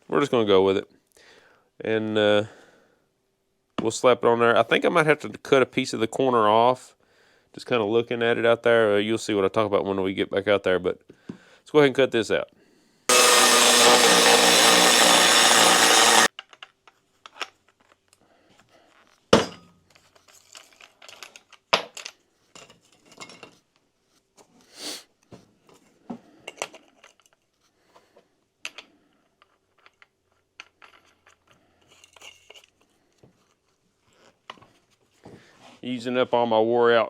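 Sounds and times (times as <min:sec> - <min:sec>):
angle grinder cutting steel: 0:13.1 - 0:16.3.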